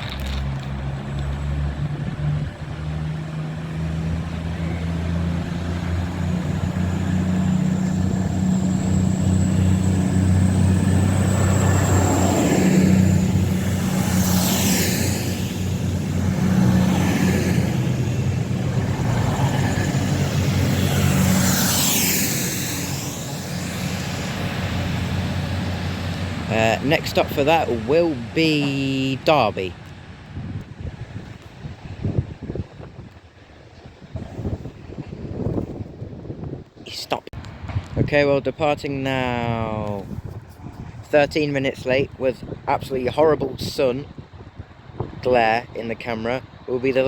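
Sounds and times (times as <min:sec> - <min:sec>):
diesel train engine drone: 0:00.0 - 0:36.5
high-pitched whines: 0:04.5 - 0:29.2.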